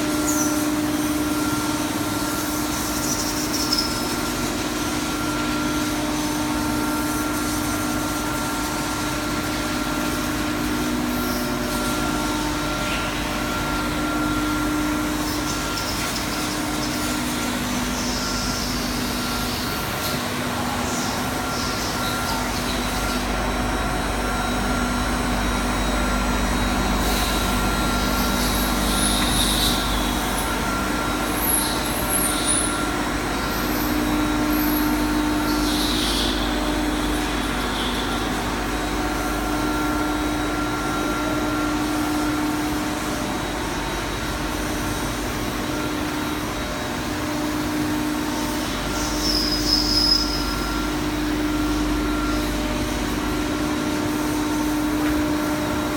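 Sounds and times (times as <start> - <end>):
grinding machine hum: 0.0 - 55.9
brief high squeals: 49.1 - 50.7.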